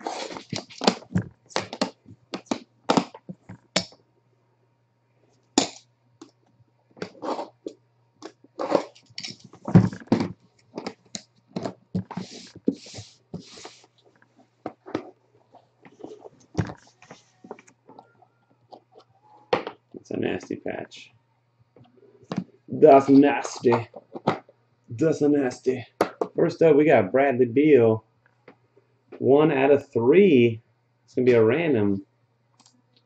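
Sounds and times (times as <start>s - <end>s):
packaging being handled: 0.0s - 3.1s
faint low hum: 0.0s - 33.0s.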